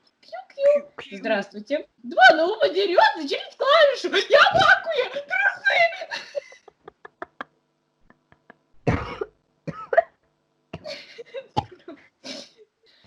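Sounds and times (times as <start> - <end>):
person coughing hard: 8.8 - 10.1.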